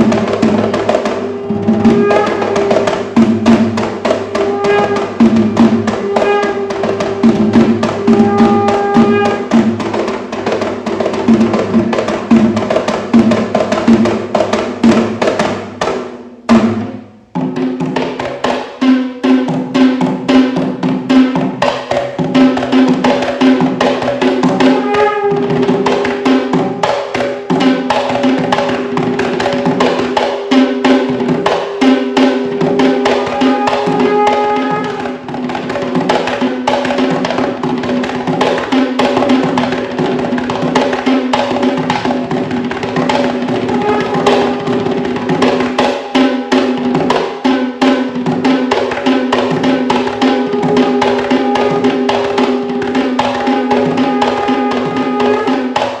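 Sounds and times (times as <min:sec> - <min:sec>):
hand drums in fast rhythm: 0:00.0 - 0:56.0
steady pitched tone: 0:00.9 - 0:09.4.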